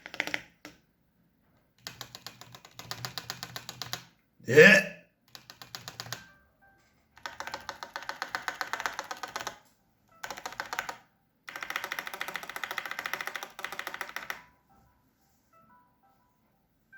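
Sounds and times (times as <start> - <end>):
fast typing on mechanical keyboard: 0.0 - 0.8, 1.8 - 4.1, 5.3 - 6.3, 7.2 - 9.6, 10.2 - 14.5.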